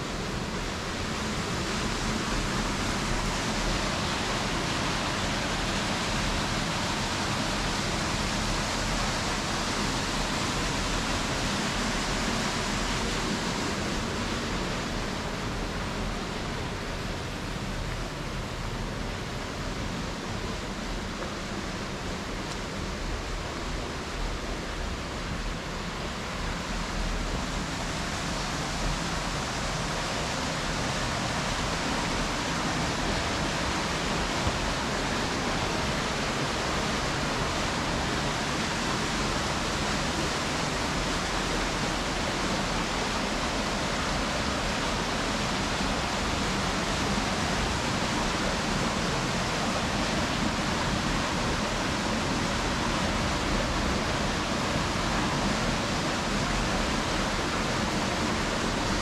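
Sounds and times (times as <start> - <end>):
water rushing over cascade: 0.0 - 59.0.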